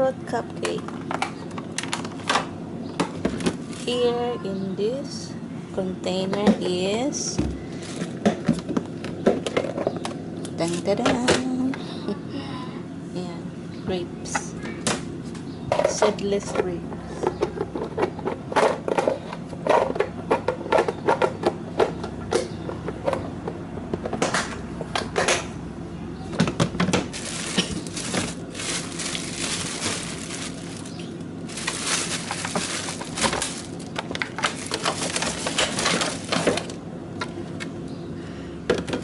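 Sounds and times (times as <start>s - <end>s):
food containers clicking and knocking: 0.6s - 4.0s, 7.8s - 11.5s, 15.7s - 25.5s, 26.3s - 37.4s
plastic packaging crinkling: 3.4s - 4.0s, 7.8s - 8.2s, 27.1s - 36.8s.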